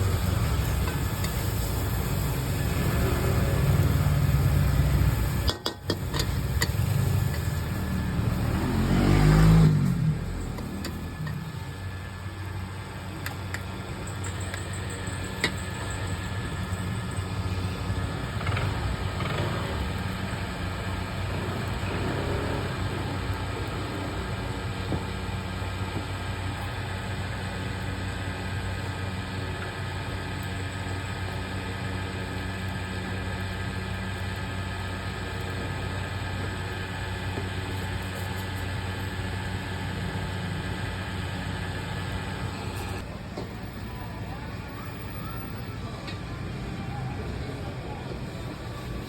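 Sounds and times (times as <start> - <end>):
traffic hum: 0.0 - 27.0
vehicle passing close by: 6.8 - 11.3.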